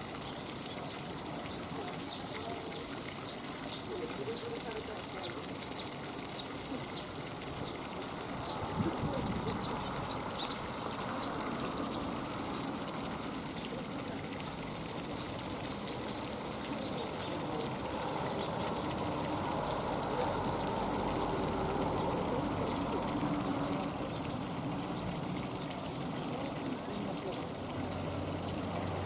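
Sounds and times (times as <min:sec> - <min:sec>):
water gushing: 0:00.0 - 0:29.0.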